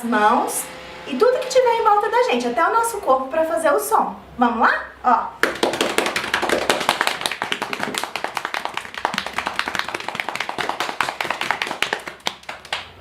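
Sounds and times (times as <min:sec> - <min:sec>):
hands clapping and slapping: 0:05.4 - 0:13.0.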